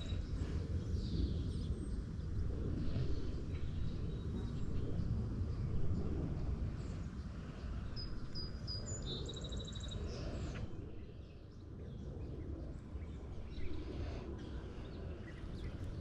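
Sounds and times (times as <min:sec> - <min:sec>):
songbird singing: 0:08.0 - 0:16.0.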